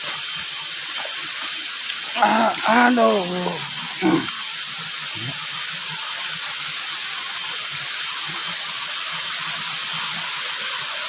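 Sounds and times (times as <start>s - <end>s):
water rushing over waterfall: 1.4s - 5.9s.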